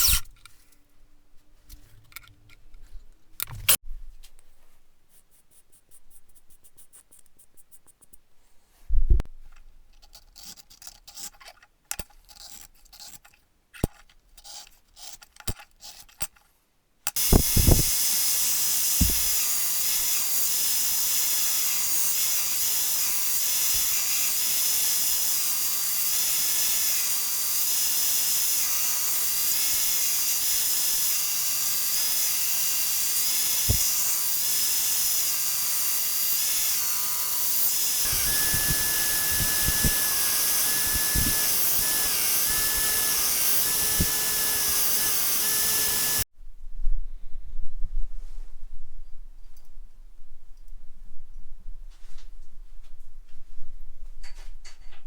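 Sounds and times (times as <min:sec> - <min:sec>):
belt sander grinding steel blade: 0:00.0 - 0:00.3, 0:17.1 - 0:46.2.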